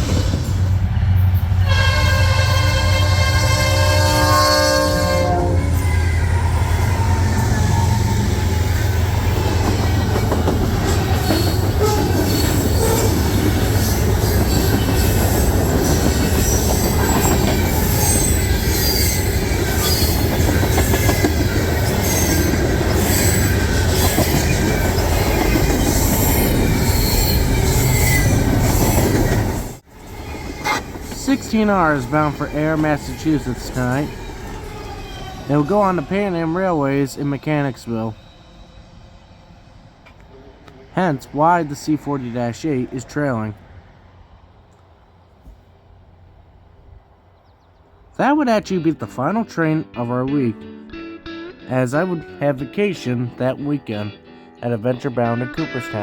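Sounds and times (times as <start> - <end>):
freight train rumbling past: 0.0 - 48.9
locomotive horn: 1.6 - 9.9, 11.7 - 13.2, 30.4 - 33.1
wheels squealing: 4.0 - 36.6
wheels clacking over rail joints: 8.4 - 36.1.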